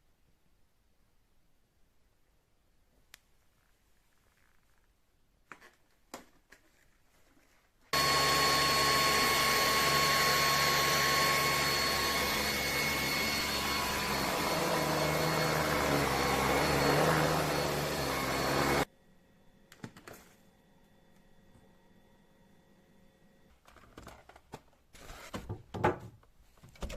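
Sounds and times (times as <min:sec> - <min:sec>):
stick vacuum cleaner running: 0:08.0 - 0:18.9.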